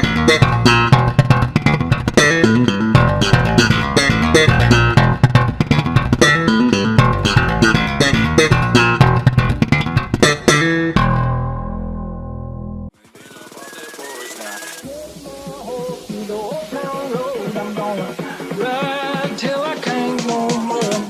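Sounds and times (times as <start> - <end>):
music with bass and guitar: 0.0 - 12.9.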